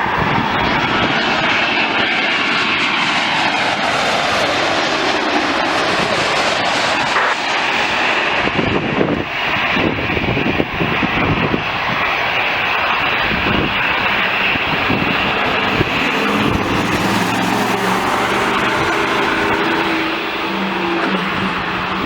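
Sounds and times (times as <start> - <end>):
airliner engines: 0.0 - 22.0.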